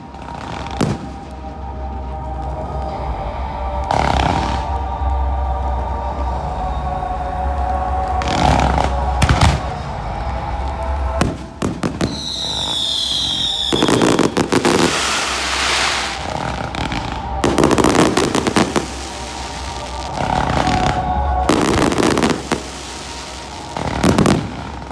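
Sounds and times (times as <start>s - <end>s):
falling firework whistle: 11.2s - 24.9s
firework bangs: 11.2s - 24.9s
rapid crackling firework bangs: 13.7s - 24.9s.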